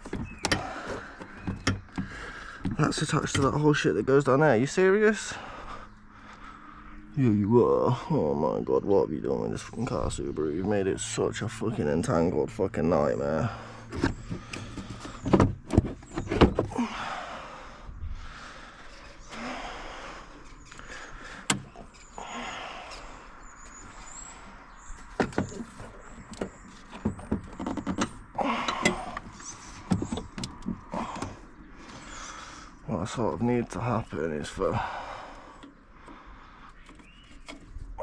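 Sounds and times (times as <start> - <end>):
tools clunking in engine bay: 0.0 - 3.6, 13.5 - 16.9, 24.9 - 31.4.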